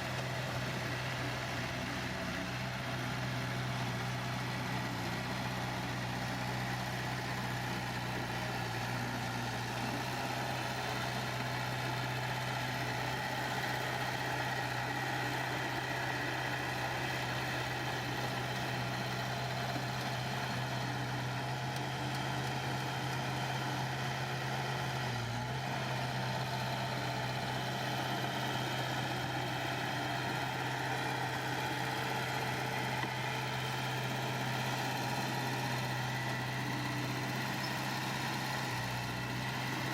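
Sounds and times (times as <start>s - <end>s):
diesel engine low hum: 0.0s - 39.9s.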